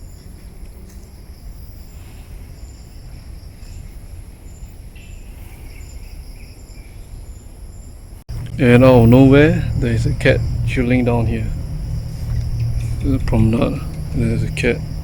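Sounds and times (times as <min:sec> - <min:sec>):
insect chirps: 0:00.0 - 0:15.0
insects droning: 0:00.0 - 0:15.0
low rumble: 0:08.3 - 0:15.0.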